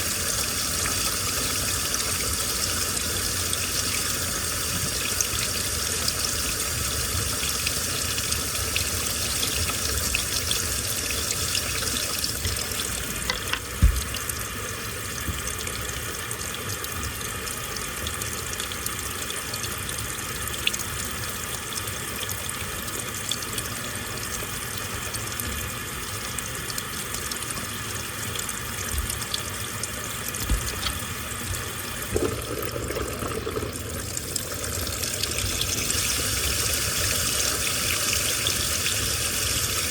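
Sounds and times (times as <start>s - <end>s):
washing machine low rumble: 0.0s - 39.9s
water sloshing in washing machine: 0.0s - 39.9s
short thumps: 13.3s - 14.2s.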